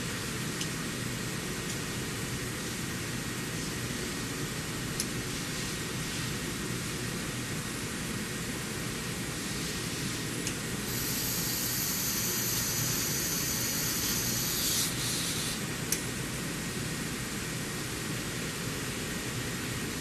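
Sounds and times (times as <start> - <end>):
milling machine running: 10.9 - 15.6.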